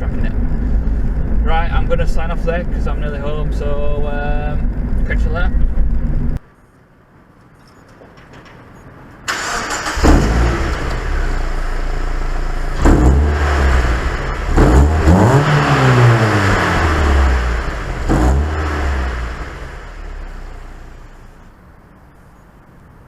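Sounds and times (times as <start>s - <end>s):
road and wind noise: 0.0s - 23.0s
car engine revving: 9.3s - 21.4s.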